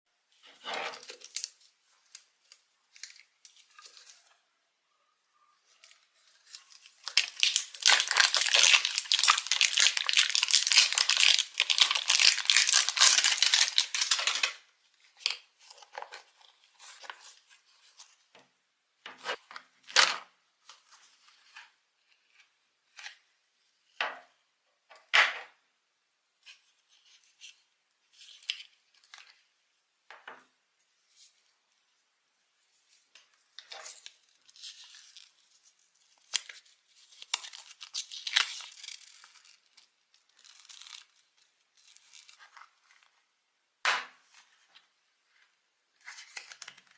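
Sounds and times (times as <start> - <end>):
packaging tearing and crinkling: 6.7 - 14.6, 33.8 - 42.5.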